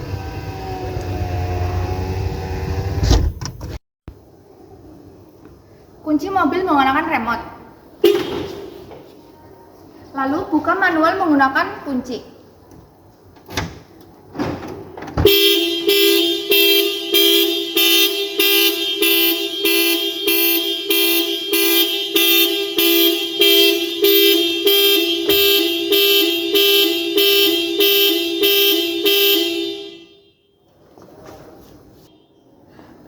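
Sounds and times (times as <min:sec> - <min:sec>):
car alarm horn honking: 0:08.0 - 0:08.8, 0:15.2 - 0:30.9.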